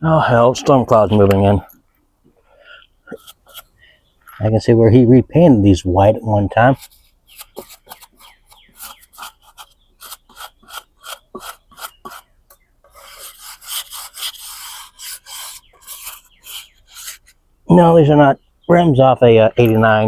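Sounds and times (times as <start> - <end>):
hand scraping paint off metal: 3.1 - 3.7, 6.5 - 12.3, 12.9 - 17.4.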